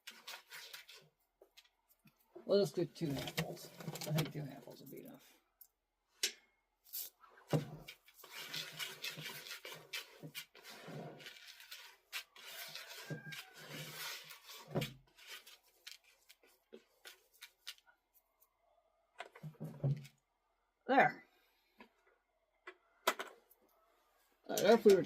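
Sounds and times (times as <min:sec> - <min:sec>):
grain rustling in bucket: 0:00.0 - 0:01.1, 0:06.9 - 0:17.8.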